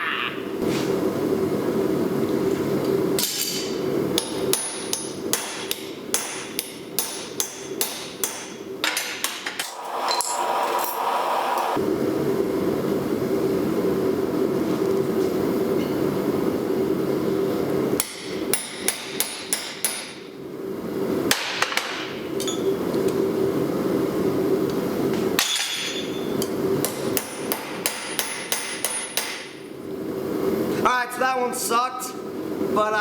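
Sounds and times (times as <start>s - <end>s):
steady hum: 0.0s - 33.0s
hammer striking metal punch: 3.2s - 9.7s, 18.0s - 20.2s, 25.4s - 26.2s, 26.8s - 29.6s.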